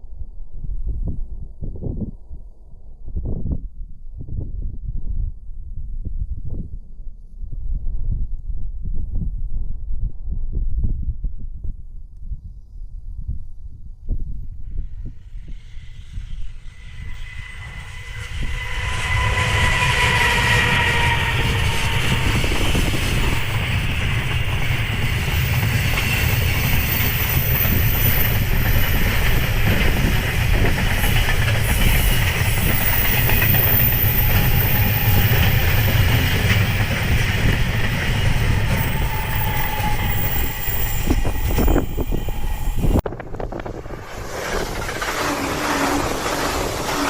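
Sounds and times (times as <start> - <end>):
freight train wagons rumbling: 15.6 - 47.0
wheels clattering on rails: 16.6 - 47.0.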